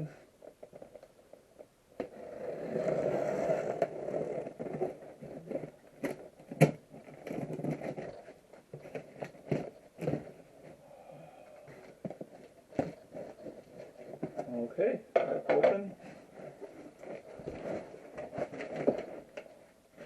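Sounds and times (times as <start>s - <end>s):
packing tape tearing: 2.0s - 10.4s
cardboard scraping and handling: 2.0s - 10.8s, 11.6s - 14.6s, 16.0s - 20.0s.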